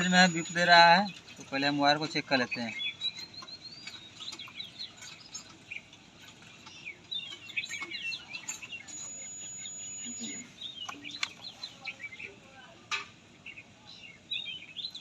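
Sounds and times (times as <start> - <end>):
multimeter beep: 0.0 - 1.0, 7.8 - 11.6
small birds chirping: 0.0 - 15.0.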